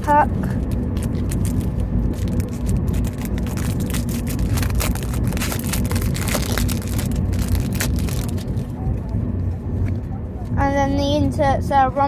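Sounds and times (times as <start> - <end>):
low rumble: 0.0 - 12.0
foil wrapper tearing and crinkling: 0.6 - 8.7.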